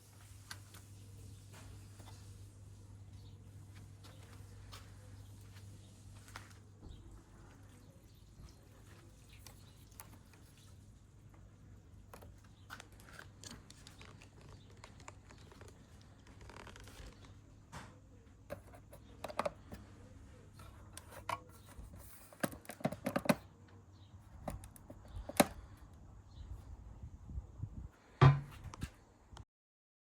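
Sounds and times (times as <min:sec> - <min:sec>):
clicks and taps of handling: 0:16.6 - 0:19.9, 0:20.6 - 0:25.7.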